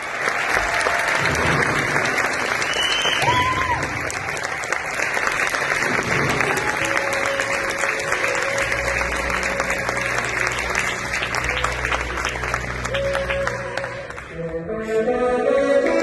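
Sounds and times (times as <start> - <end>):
audience applauding: 0.0 - 14.4
music: 5.2 - 16.0.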